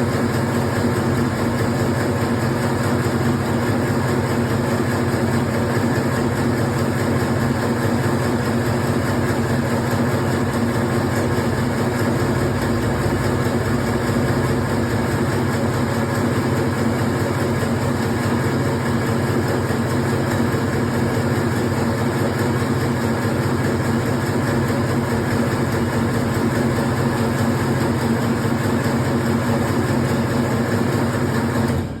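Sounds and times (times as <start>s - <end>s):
machine motor humming: 10.0s - 17.0s.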